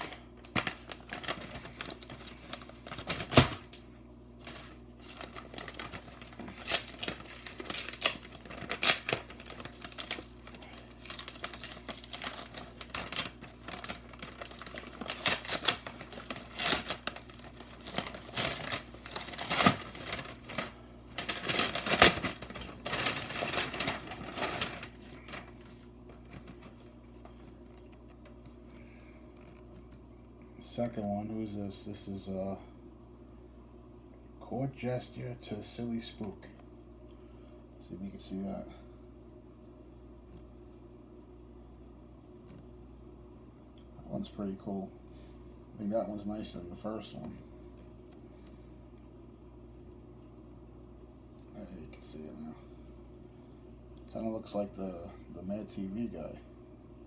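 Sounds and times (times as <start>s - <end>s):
plastic and card crinkling: 0.0s - 30.0s.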